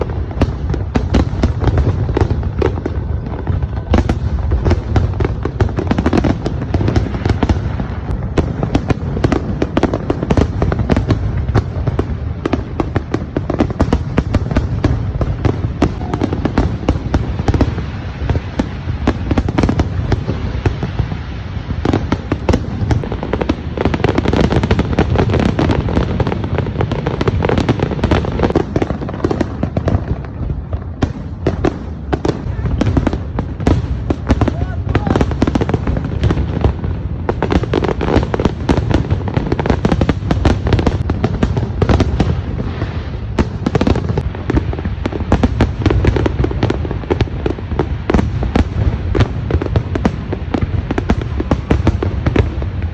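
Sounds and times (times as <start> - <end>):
fireworks bangs and crackles: 0.0 - 52.9.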